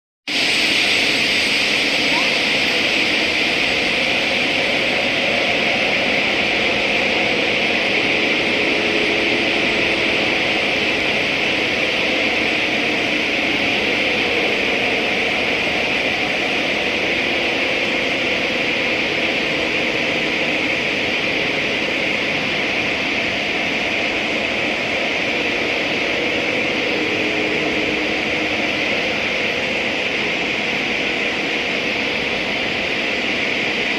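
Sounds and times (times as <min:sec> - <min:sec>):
furnace roaring and hissing: 0:00.3 - 0:33.9.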